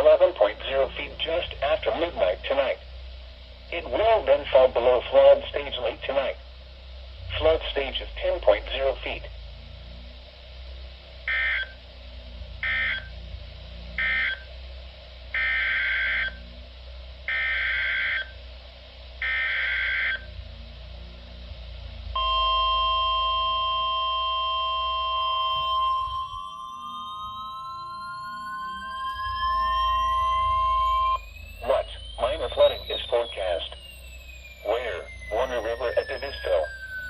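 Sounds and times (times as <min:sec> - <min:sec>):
rising tones: 0:19.2 - 0:37.0
squawking data tone bursts: 0:22.2 - 0:33.8, 0:34.4 - 0:37.0
steady alert tone: 0:22.2 - 0:37.0.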